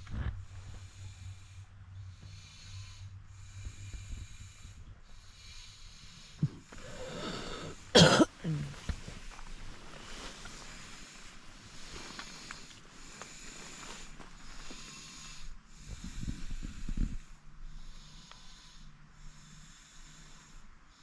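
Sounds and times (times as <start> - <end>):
low steady hum: 0.0 - 21.0
person coughing: 6.4 - 8.9.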